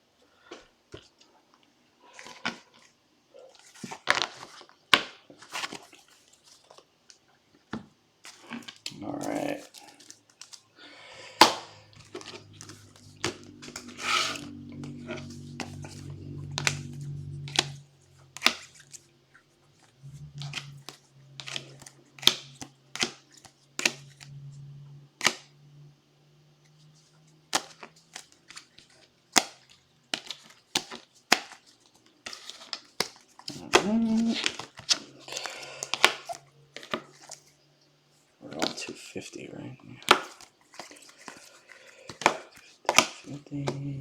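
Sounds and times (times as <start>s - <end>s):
low steady hum: 8.8s - 29.1s, 43.3s - 44.0s.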